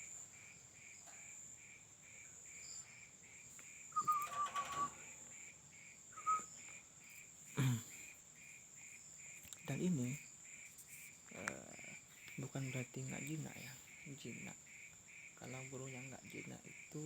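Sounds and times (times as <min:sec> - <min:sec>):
insects chirping: 0:00.0 - 0:17.0
bird whistle-like call: 0:03.9 - 0:05.0, 0:06.2 - 0:06.5.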